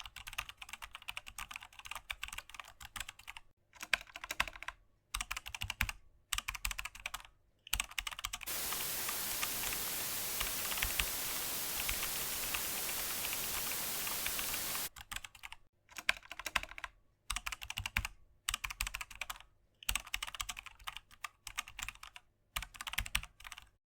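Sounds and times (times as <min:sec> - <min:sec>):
rapid clicking bursts: 0:08.5 - 0:14.9
steady hiss with crackles: 0:08.5 - 0:14.9.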